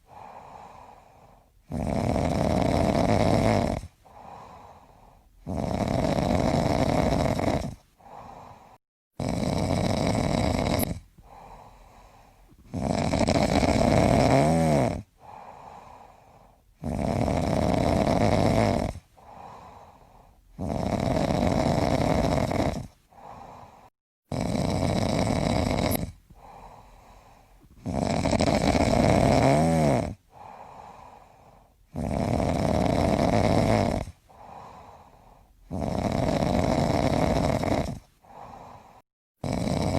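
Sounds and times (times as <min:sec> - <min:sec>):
soft breathing: 0:00.0 - 0:01.7, 0:03.9 - 0:05.5, 0:07.7 - 0:08.8, 0:11.0 - 0:12.8, 0:15.0 - 0:16.8, 0:19.0 - 0:20.6, 0:22.8 - 0:23.9, 0:26.1 - 0:27.9, 0:30.2 - 0:31.9, 0:34.1 - 0:35.7, 0:37.9 - 0:39.0
person snoring: 0:00.0 - 0:39.9.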